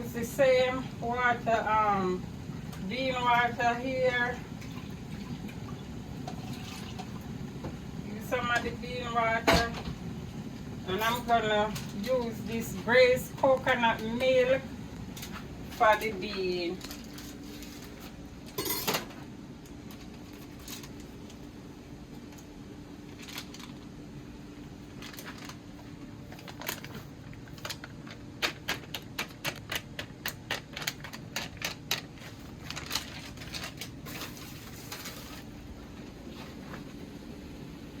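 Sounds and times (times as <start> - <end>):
steady low hum: 0.0 - 28.9.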